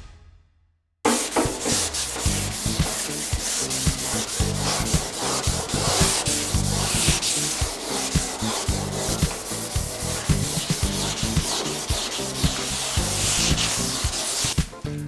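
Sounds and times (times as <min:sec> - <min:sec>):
sandpaper rubbing strokes: 0:01.1 - 0:14.7.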